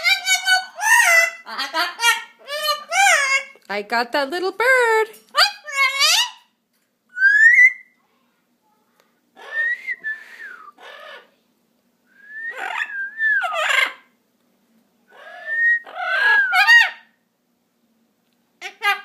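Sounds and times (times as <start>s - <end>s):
parrot squawks: 0.0s - 3.6s, 5.3s - 6.5s, 12.5s - 14.2s, 15.1s - 17.2s, 18.6s - 19.0s
parrot whistling: 7.1s - 7.9s, 12.2s - 14.0s, 15.2s - 17.1s.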